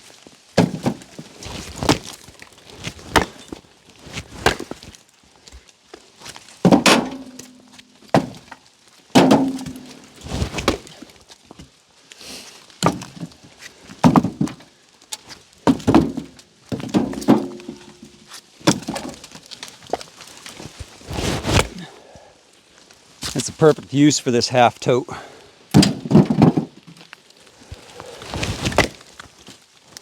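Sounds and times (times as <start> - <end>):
firewood knocking: 6.6 - 7.5, 9.2 - 10.0, 12.8 - 13.4, 14.0 - 14.6, 15.6 - 20.1, 25.7 - 29.3.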